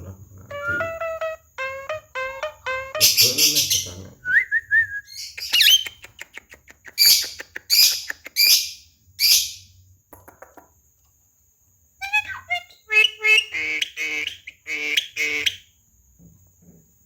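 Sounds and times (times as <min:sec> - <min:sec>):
myna bird calling: 0:00.5 - 0:04.0.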